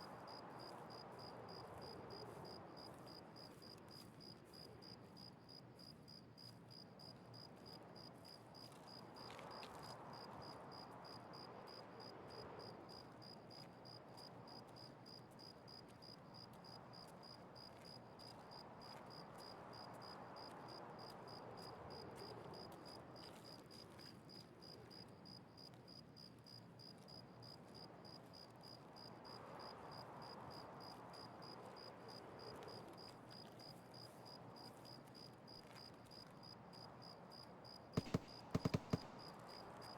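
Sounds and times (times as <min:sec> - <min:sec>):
cricket chirping: 0:23.4 - 0:39.9
faint rushing background: 0:38.0 - 0:39.9.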